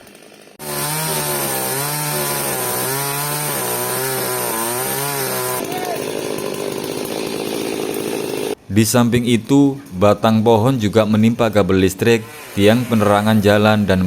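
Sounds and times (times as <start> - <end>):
chainsaw cutting wood: 0.0 - 8.6, 12.1 - 13.5.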